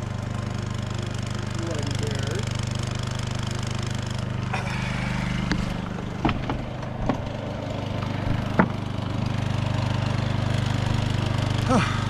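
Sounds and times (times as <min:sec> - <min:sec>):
generator engine humming: 0:00.0 - 0:12.0
sharp knocks and clatters: 0:05.4 - 0:07.4, 0:08.1 - 0:08.8.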